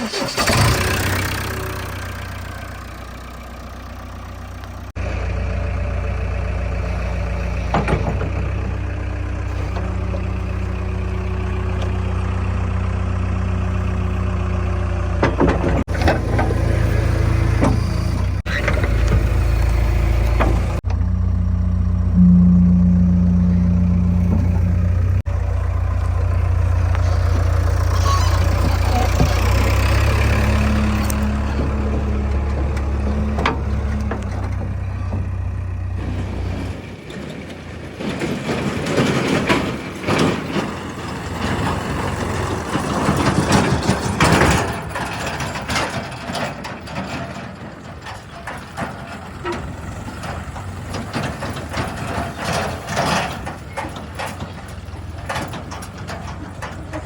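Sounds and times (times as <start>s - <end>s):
diesel engine droning: 0.0s - 57.0s
clattering and knocking: 15.2s - 20.9s.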